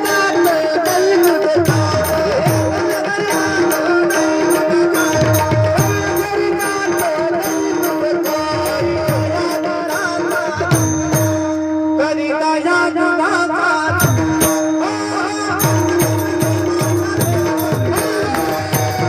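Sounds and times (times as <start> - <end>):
harmonium drone: 0.0 - 19.0
tabla drumming: 0.0 - 19.0.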